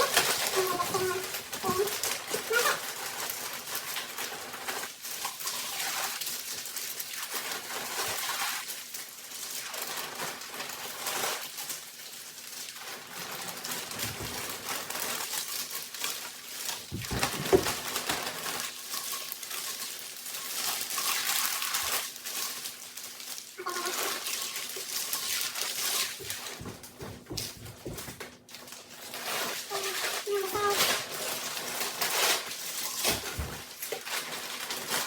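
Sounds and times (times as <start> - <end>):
potting soil rustling and scraping: 0.0 - 11.8, 28.7 - 35.0.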